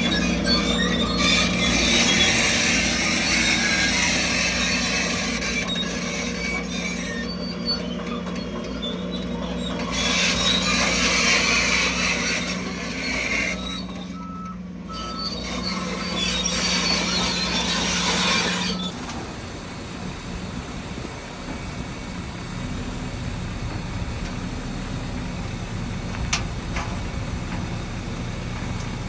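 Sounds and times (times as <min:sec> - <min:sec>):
diesel machinery hum: 0:00.0 - 0:29.0
reversing beeps: 0:13.6 - 0:17.3.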